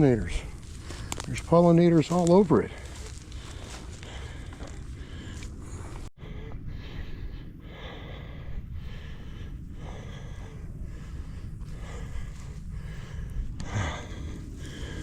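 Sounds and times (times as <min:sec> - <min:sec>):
person breathing hard: 0:00.4 - 0:01.3, 0:02.7 - 0:15.0.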